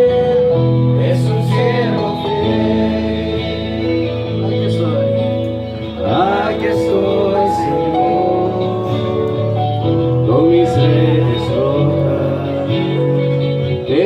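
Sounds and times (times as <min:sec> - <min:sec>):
held instrumental chords: 0:00.0 - 0:14.0
man singing: 0:00.0 - 0:14.0.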